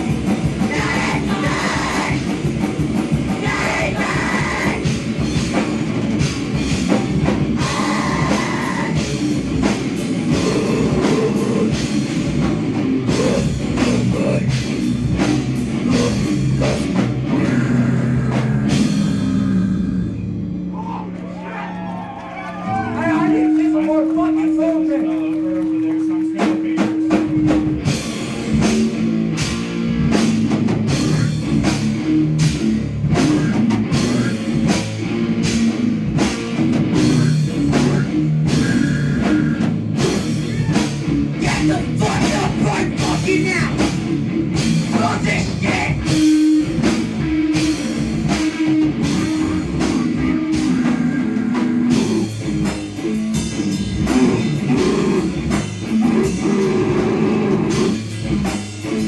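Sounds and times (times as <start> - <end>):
fast drum kit hits: 0.0 - 20.0, 22.7 - 59.0
distorted low guitar: 0.0 - 20.7, 26.6 - 59.0.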